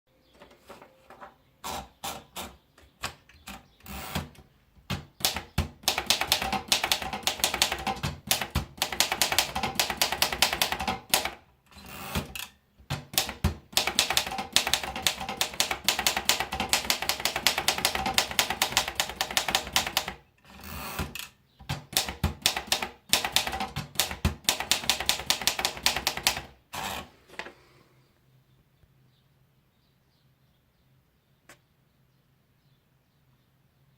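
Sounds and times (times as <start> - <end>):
typewriter key strikes: 21.7 - 26.5.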